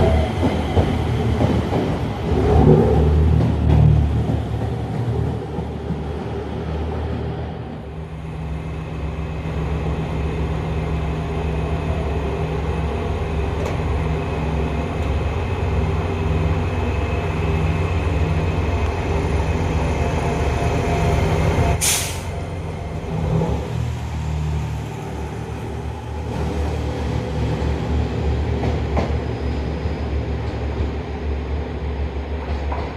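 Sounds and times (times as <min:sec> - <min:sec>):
railcar engine droning: 0:00.0 - 0:32.9
air hiss: 0:21.8 - 0:22.4.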